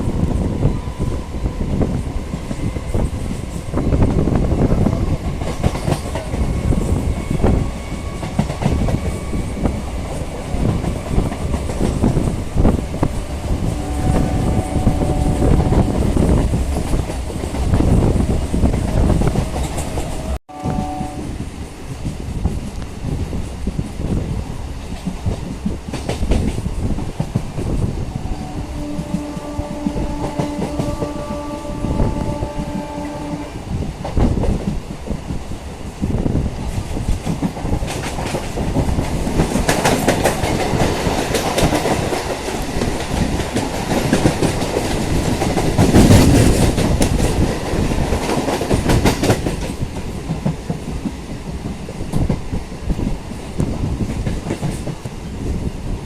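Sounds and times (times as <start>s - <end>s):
train wheel and rail clatter: 0.0s - 56.0s
train horn held note: 13.6s - 16.1s, 20.5s - 21.3s, 28.2s - 33.7s.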